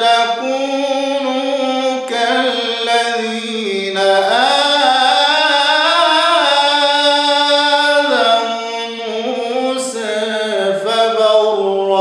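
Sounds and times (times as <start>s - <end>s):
man reciting melodically: 0.0s - 12.0s.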